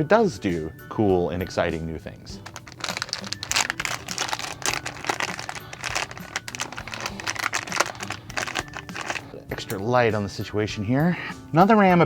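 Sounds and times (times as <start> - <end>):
small clicks and rattles: 2.4 - 9.2
plastic packaging crinkling: 2.4 - 9.3.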